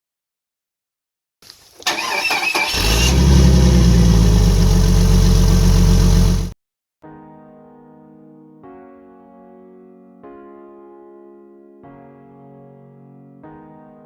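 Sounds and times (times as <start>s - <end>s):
car engine starting and running: 1.8s - 6.6s
quiet piano music: 7.0s - 14.0s.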